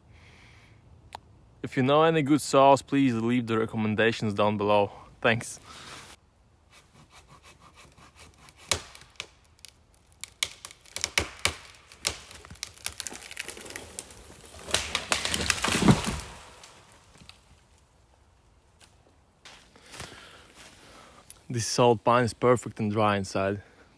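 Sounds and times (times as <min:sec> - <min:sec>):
wood cracking and splintering: 0:08.1 - 0:18.1.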